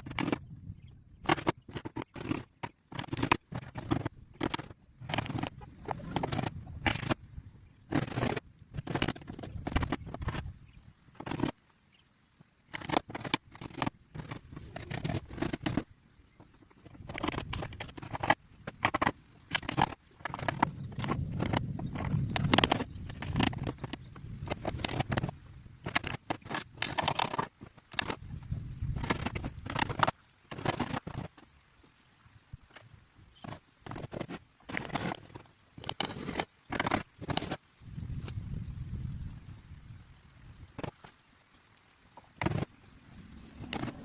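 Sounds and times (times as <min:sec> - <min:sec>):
wood scraping and rubbing: 0:00.0 - 0:00.5, 0:01.2 - 0:07.2, 0:07.8 - 0:11.6, 0:12.6 - 0:31.4, 0:33.4 - 0:37.6, 0:42.3 - 0:42.7, 0:43.4 - 0:44.0
knocks and clicks on wood: 0:01.2 - 0:07.2, 0:12.7 - 0:28.2.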